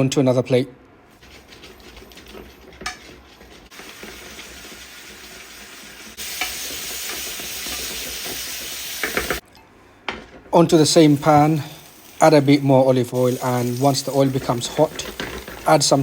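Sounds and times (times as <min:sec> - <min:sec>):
food sizzling in a pan: 0:03.7 - 0:09.4, 0:10.8 - 0:16.0.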